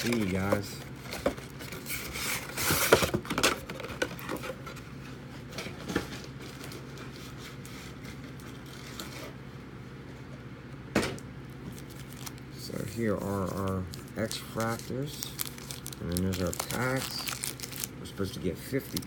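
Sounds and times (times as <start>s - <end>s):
cardboard rustling and tearing: 0.0s - 4.7s, 11.7s - 17.9s
faint room hum: 0.0s - 19.0s.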